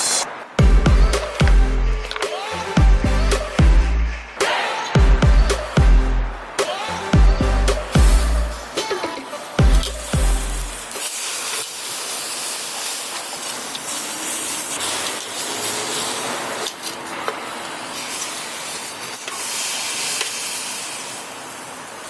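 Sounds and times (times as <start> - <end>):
barbecue sizzling: 6.3 - 22.0
small crackles: 9.8 - 22.0.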